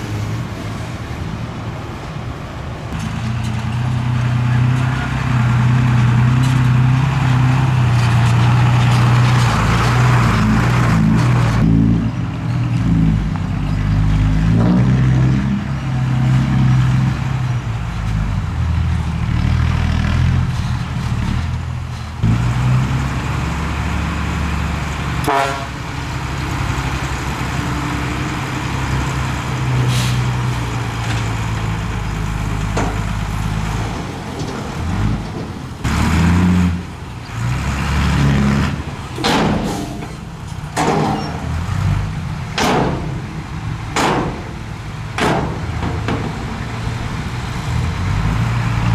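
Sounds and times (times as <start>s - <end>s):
diesel machinery engine: 0.0s - 48.9s
metallic clanks: 31.0s - 37.5s, 38.2s - 48.9s.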